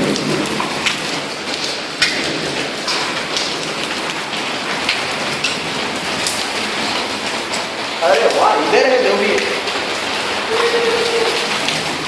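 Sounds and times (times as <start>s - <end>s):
hailstones striking hard surfaces: 0.0s - 12.0s
heavy rain hiss: 0.0s - 12.0s.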